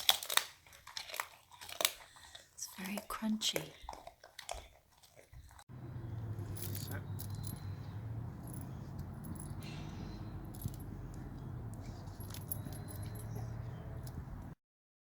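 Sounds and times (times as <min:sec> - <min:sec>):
low hum: 0:05.7 - 0:14.6
metal collar tags jingling: 0:05.7 - 0:14.6.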